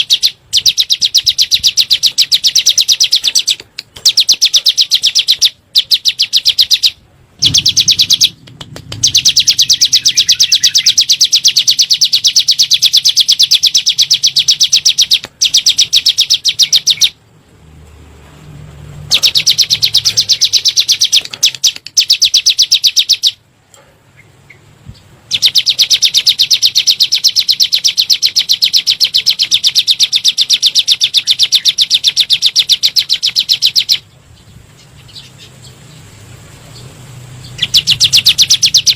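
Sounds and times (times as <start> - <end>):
bird singing fast high notes: 0.0 - 8.4, 9.0 - 17.2, 19.1 - 23.4, 37.4 - 38.9.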